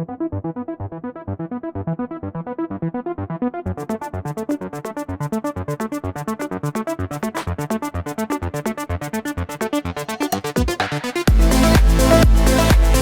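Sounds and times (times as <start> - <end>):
electronic music synth beat: 3.7 - 13.0.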